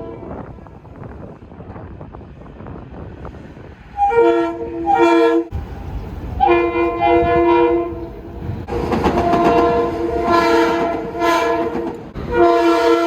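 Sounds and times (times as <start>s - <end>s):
train rumble: 0.0s - 13.0s
train horn chord: 4.0s - 5.5s, 6.4s - 8.1s, 8.7s - 13.0s.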